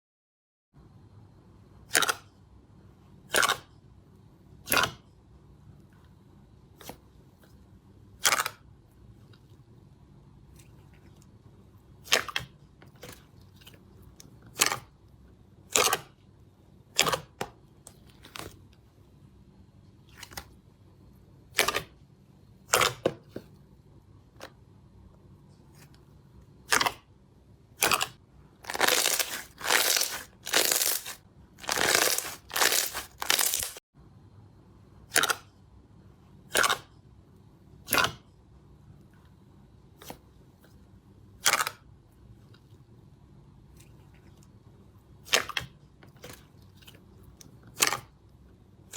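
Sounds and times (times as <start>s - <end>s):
slime popping and squelching: 27.8s - 33.8s.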